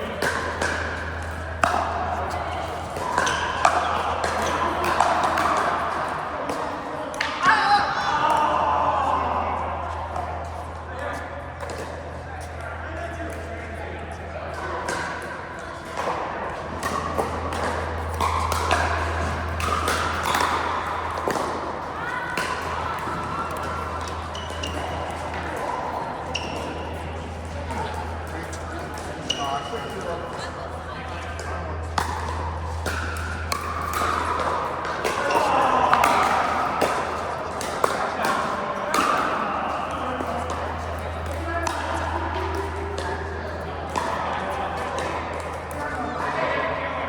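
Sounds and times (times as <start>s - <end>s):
indistinct voices: 0.0s - 47.0s
steady low hum: 0.0s - 47.0s
ball bouncing: 16.8s - 21.6s.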